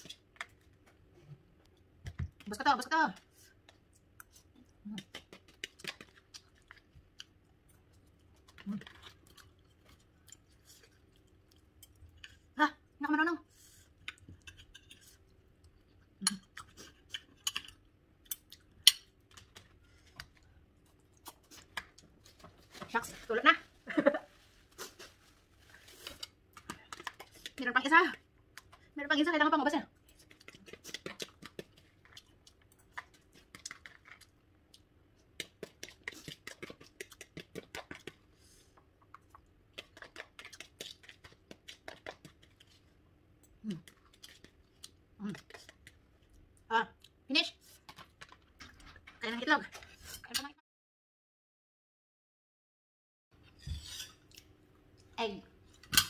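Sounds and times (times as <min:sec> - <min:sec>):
eating clicks and smacks: 0:03.2 - 0:10.5, 0:30.0 - 0:38.3, 0:39.0 - 0:42.8, 0:43.4 - 0:47.2
chewing and slurping noodles: 0:30.0 - 0:46.4.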